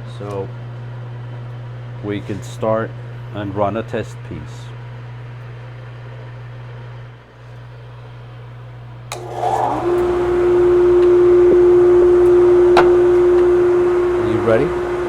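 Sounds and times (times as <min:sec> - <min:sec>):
machine low hum: 0:00.0 - 0:15.0
motors whining: 0:09.1 - 0:15.0.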